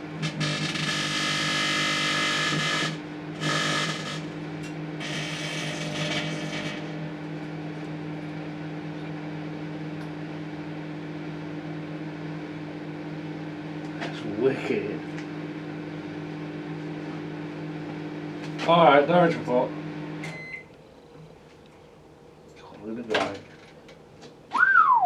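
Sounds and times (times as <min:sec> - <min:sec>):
microwave oven humming: 0:00.0 - 0:25.0
electrical buzzing and crackling: 0:00.2 - 0:04.4, 0:05.0 - 0:07.1.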